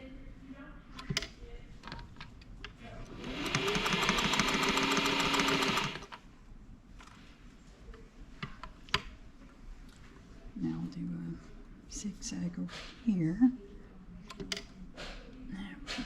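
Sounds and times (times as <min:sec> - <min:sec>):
sewing machine running: 0:03.1 - 0:06.2.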